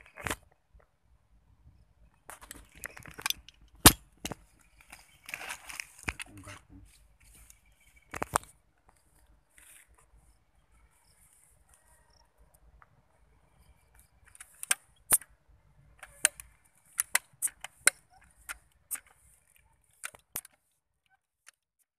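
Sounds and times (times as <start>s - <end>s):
sharp clicks: 15.9s - 19.2s.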